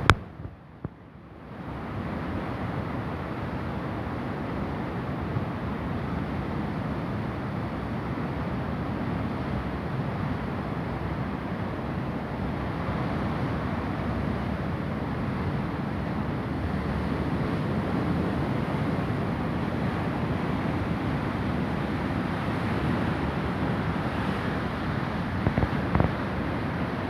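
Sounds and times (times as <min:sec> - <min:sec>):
wind rumbling on microphone: 0:00.0 - 0:01.0, 0:12.5 - 0:27.0
heavy surf breaking: 0:17.2 - 0:27.0.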